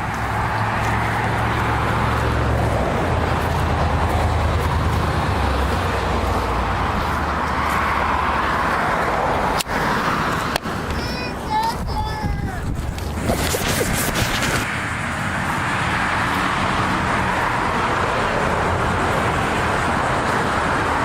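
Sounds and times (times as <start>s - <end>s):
cars rushing past: 0.0s - 21.0s
low traffic rumble: 0.0s - 21.0s.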